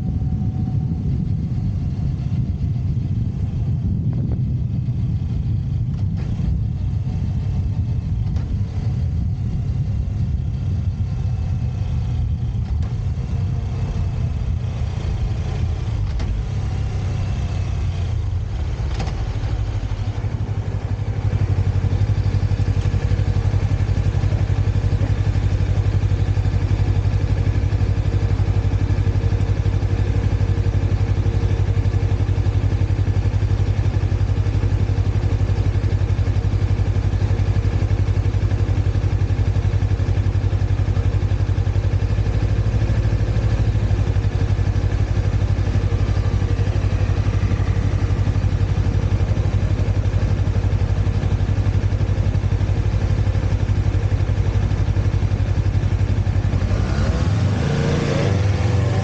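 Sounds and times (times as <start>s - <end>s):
motorcycle engine running: 0.0s - 59.0s
road noise: 0.0s - 59.0s.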